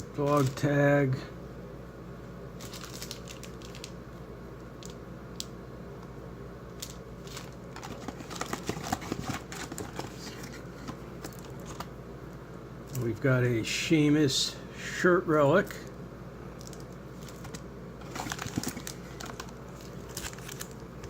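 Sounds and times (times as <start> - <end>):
steady low hum: 0.0 - 21.0
cards and packaging rustling: 0.2 - 0.7, 2.6 - 4.0, 6.8 - 11.9, 16.6 - 21.0.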